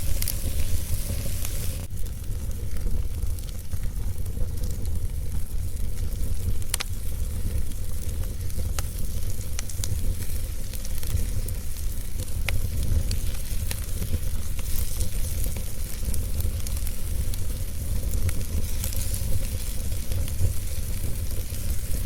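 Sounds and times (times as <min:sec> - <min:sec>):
low rumble: 0:00.0 - 0:06.3
fire crackling: 0:00.0 - 0:22.0.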